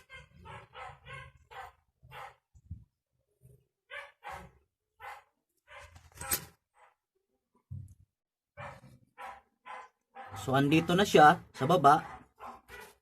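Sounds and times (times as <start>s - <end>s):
dog barking: 0.0s - 2.5s, 3.8s - 7.1s, 8.5s - 13.0s.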